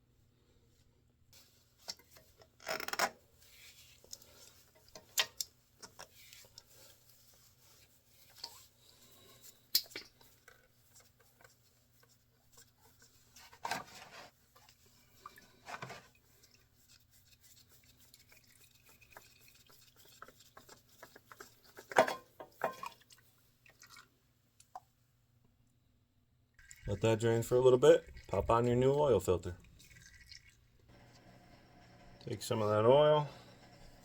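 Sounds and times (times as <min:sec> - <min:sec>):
tools clinking and scraping: 0:21.9 - 0:22.8.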